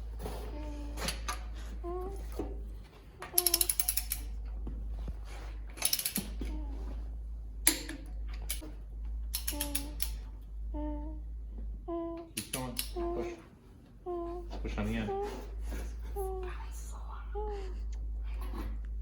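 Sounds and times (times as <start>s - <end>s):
ratchet wrench clicking: 3.4s - 4.4s, 5.8s - 6.4s, 9.3s - 10.2s.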